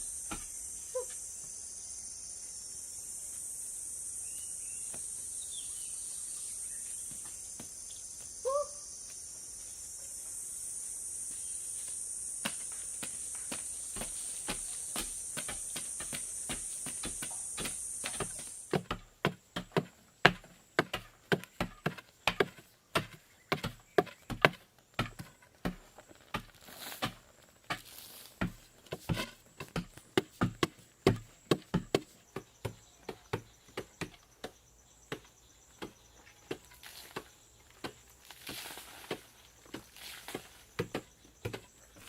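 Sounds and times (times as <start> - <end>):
steady high hiss: 0.0 - 18.8
chopping into wood: 12.4 - 41.7.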